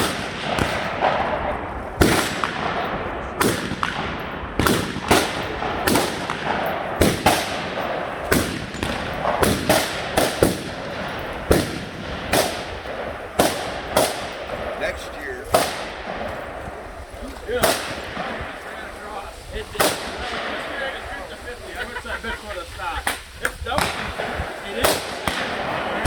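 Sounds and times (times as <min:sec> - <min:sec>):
gunshots: 0:00.0 - 0:21.7, 0:23.0 - 0:26.0
steady background hiss: 0:01.6 - 0:26.0.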